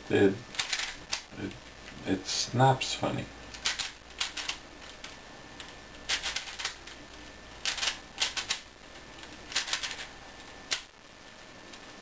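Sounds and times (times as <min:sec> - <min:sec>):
puzzle cube layers clicking: 0:00.5 - 0:02.0, 0:03.5 - 0:10.9.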